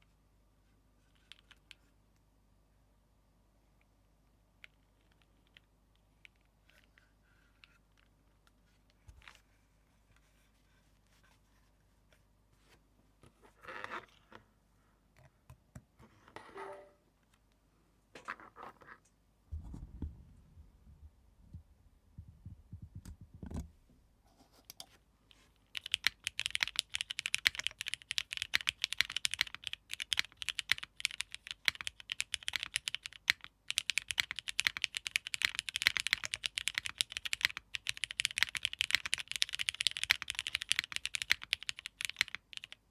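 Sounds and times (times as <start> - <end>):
fast typing on mechanical keyboard: 25.7 - 42.8.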